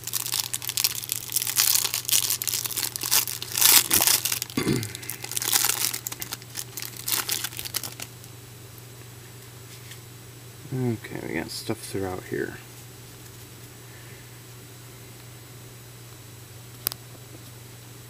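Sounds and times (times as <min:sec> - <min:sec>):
wrapper tearing and crinkling: 0:00.0 - 0:08.1.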